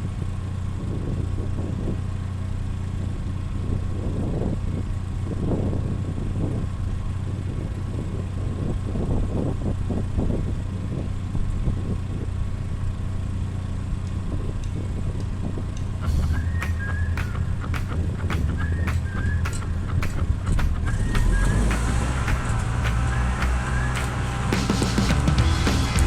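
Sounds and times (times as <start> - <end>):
engine humming: 12.2 - 26.0.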